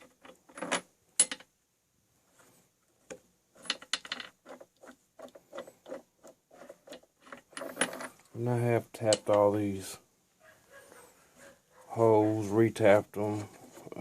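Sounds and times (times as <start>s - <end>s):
metal tools clinking and scraping: 6.6s - 8.3s.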